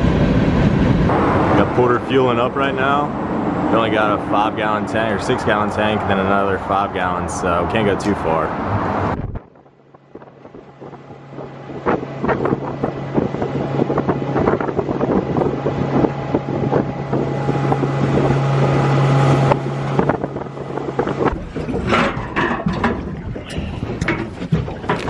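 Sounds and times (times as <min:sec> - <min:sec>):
wind buffeting microphone: 0:00.0 - 0:25.0
outboard motor running: 0:09.2 - 0:25.0.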